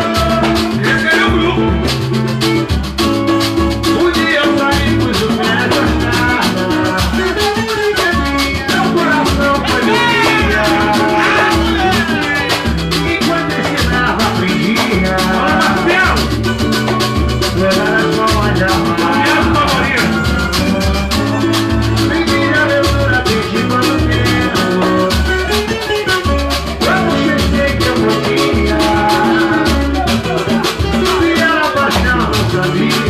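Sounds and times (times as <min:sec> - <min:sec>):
band music with singing: 0:00.0 - 0:33.0.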